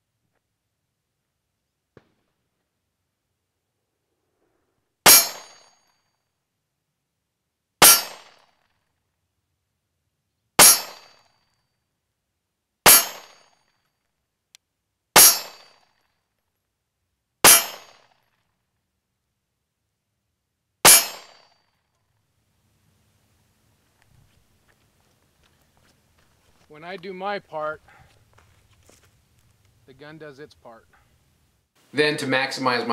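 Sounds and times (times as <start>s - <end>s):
pistol shots: 7.8s - 8.5s, 10.6s - 11.2s, 12.9s - 13.5s, 17.4s - 18.1s, 20.8s - 21.4s.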